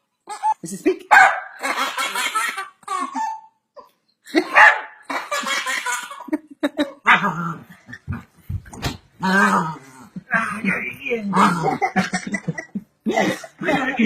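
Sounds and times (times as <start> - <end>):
dog barking: 1.1 - 1.6, 4.4 - 5.0.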